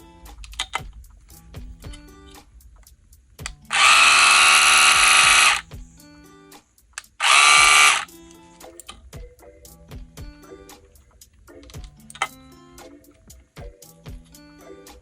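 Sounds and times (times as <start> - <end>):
light background music: 0.0 - 15.0
hair trimmer motor buzzing: 3.7 - 5.6, 7.2 - 8.1.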